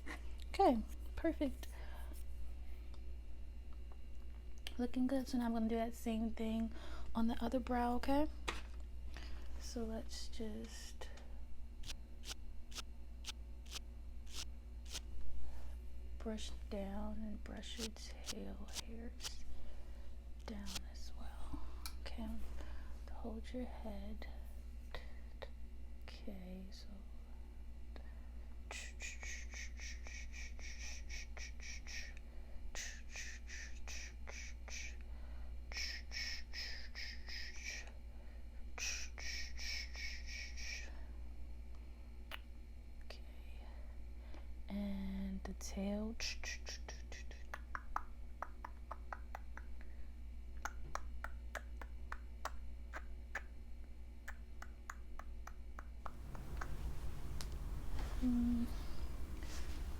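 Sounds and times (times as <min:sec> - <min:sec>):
razor scraping hairs: 0:11.8 - 0:15.1, 0:17.8 - 0:19.4, 0:56.1 - 0:59.9
scissors snipping: 0:13.7 - 0:15.0.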